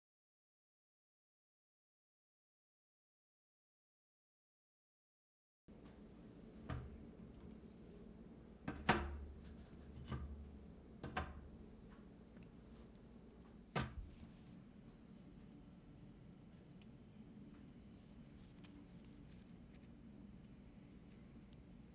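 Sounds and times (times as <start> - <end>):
faint low hum: 5.7 - 21.9.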